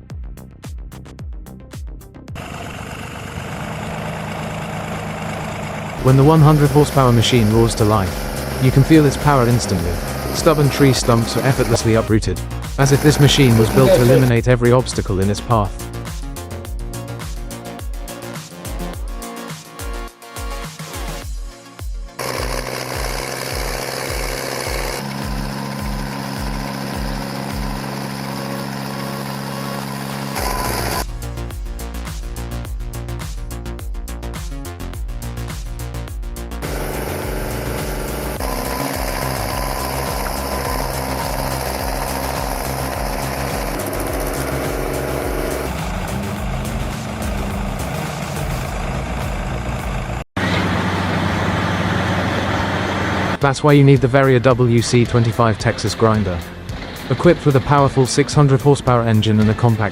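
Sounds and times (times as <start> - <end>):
background music with steady beat: 0.0 - 2.4, 6.0 - 50.2, 53.3 - 59.9
heavy machine engine running: 2.4 - 14.4, 22.2 - 31.2, 36.6 - 53.4, 55.6 - 57.9.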